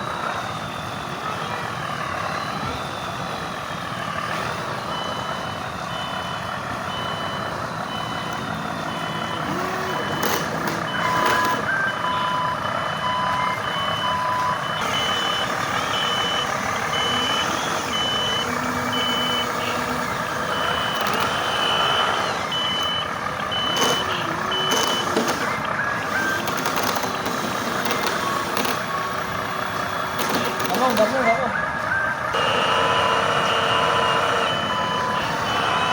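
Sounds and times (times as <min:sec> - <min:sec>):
truck engine running: 0:00.0 - 0:35.9
truck reversing beeper: 0:00.0 - 0:35.9.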